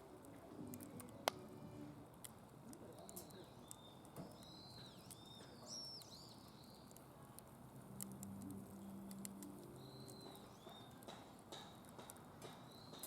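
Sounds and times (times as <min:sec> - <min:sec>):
wood fire crackling: 0:00.0 - 0:13.0
high whistling chirps: 0:09.8 - 0:11.0.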